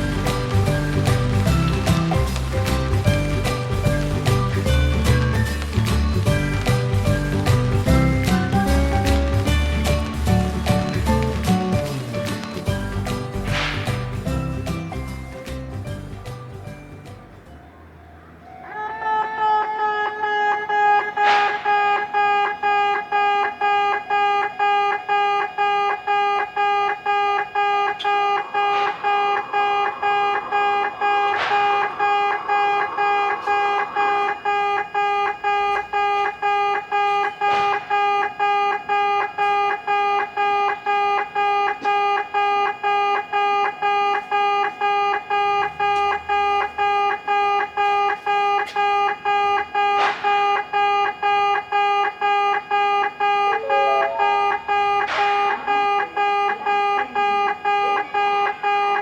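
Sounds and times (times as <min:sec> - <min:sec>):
electronic warning beeps: 0:22.0 - 0:59.0.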